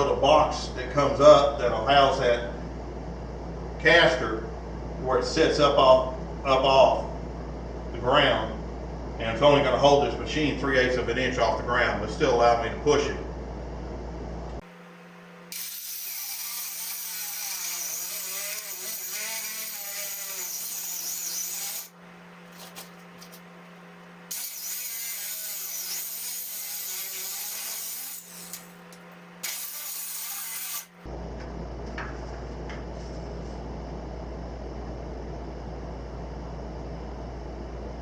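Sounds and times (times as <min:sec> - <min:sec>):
steady low hum: 0:00.0 - 0:38.0
power tool hissing: 0:15.5 - 0:21.9, 0:29.4 - 0:31.0.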